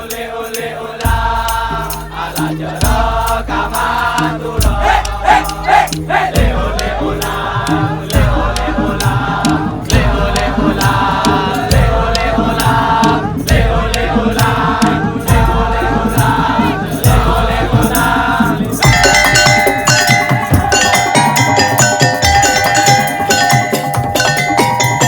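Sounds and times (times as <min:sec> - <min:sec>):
group chanting: 0:00.0 - 0:25.0
ringing mallet percussion: 0:00.0 - 0:25.0
deep drum hits: 0:04.6 - 0:07.1.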